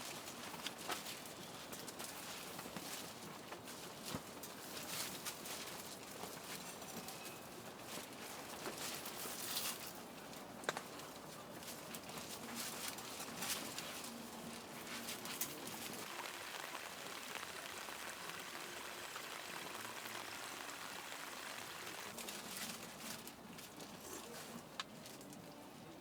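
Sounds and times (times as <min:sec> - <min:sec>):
steady rain: 0:14.2 - 0:23.3
loud raindrops striking: 0:16.0 - 0:22.2.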